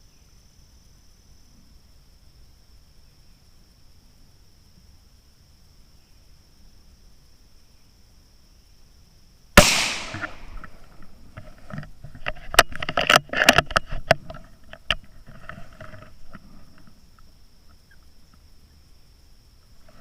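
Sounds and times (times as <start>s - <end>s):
rifle shot: 9.6s - 10.9s.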